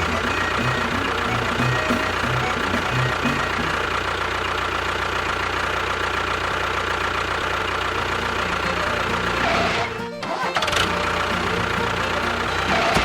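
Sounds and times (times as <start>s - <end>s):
low musical notes: 0.0s - 3.9s, 8.0s - 13.0s
constant whine: 0.0s - 13.0s
small engine idling: 0.0s - 13.0s.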